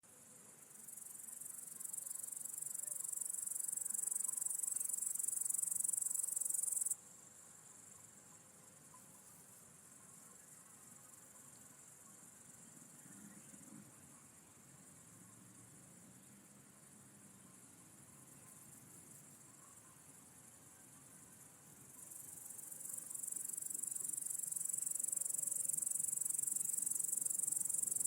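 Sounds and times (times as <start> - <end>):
high-pitched insect trilling: 0.9 - 7.0, 22.0 - 28.0.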